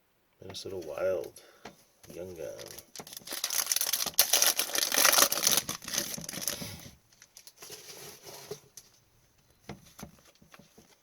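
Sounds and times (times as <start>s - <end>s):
foil wrapper tearing and crinkling: 2.6s - 7.8s.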